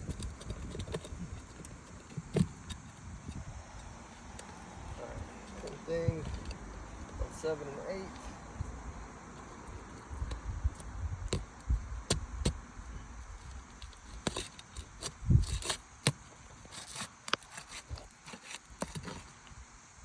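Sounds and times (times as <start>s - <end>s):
scratchy crackling and scraping: 0.0s - 3.5s, 13.4s - 19.5s.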